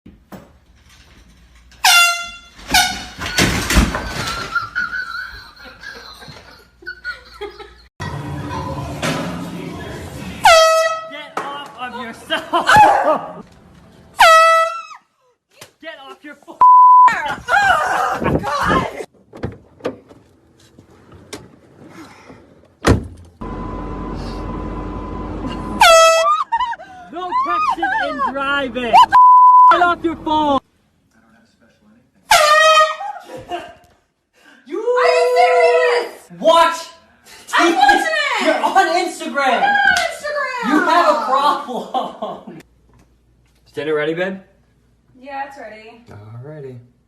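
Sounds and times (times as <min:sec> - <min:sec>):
air horn blasts: 0:01.8 - 0:03.2, 0:10.4 - 0:11.1, 0:25.7 - 0:26.4, 0:32.3 - 0:33.0.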